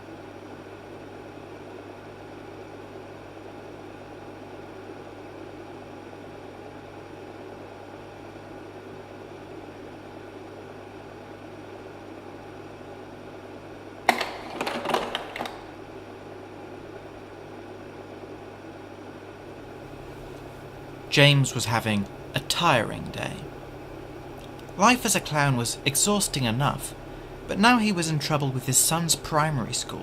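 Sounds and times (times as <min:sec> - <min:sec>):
projector cooling fan hum: 0:00.0 - 0:30.0
projector mechanical clacks: 0:14.1 - 0:15.8, 0:19.7 - 0:30.0.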